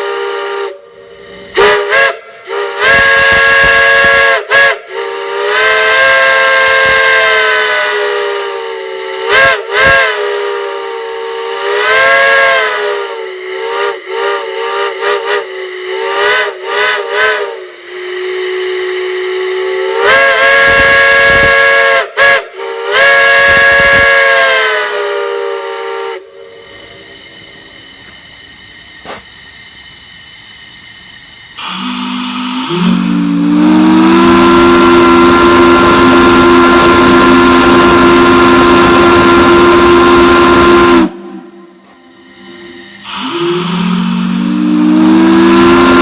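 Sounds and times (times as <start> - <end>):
steady hiss: 0.0 - 5.5, 24.9 - 46.0
large whistle blasts: 0.0 - 29.5, 31.6 - 46.0.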